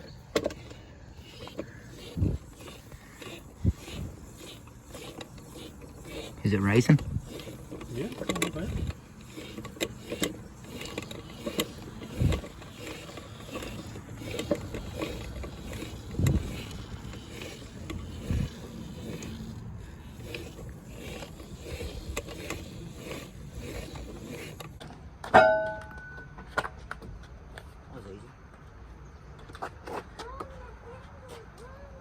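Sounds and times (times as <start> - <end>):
sharp metallic clang: 25.3 - 26.3.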